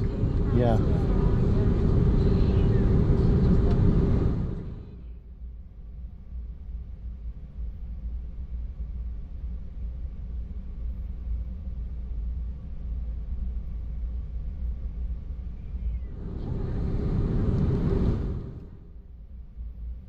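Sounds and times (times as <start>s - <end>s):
faint jet engine tones: 0.0s - 7.1s, 10.8s - 20.0s
aircraft cabin low rumble: 0.0s - 20.0s.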